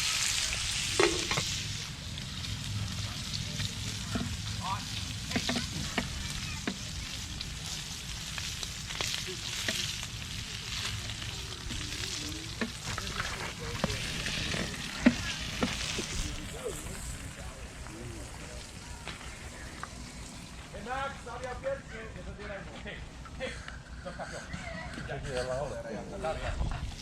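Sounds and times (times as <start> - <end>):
food sizzling in a frying pan: 0.0 - 20.8.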